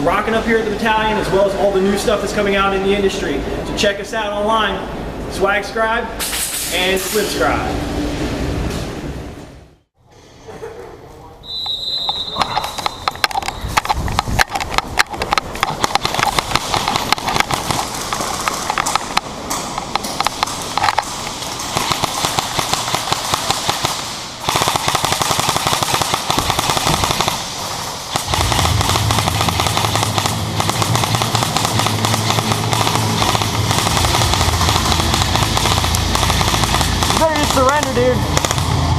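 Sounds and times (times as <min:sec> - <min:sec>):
airsoft guns firing bursts: 0:15.7 - 0:18.7, 0:21.4 - 0:38.8
steady low drone: 0:26.3 - 0:38.9.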